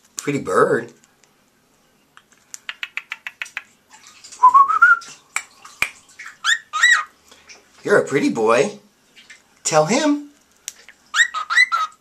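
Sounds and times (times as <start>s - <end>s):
cockatiel clicking: 2.2s - 3.7s
cockatiel whistling: 11.1s - 12.0s.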